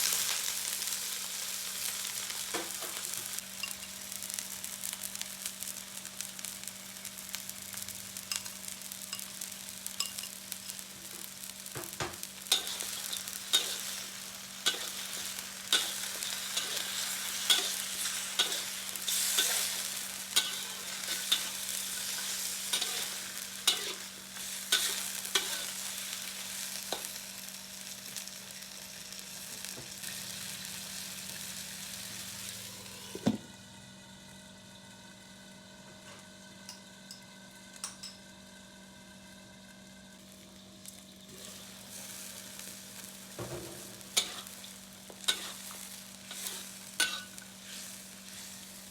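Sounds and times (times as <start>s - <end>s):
food sizzling in oil: 0.0s - 33.3s, 36.6s - 48.9s.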